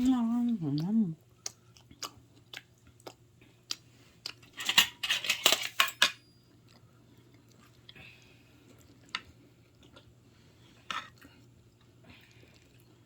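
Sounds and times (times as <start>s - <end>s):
cutlery clinking on a plate: 4.6s - 6.2s.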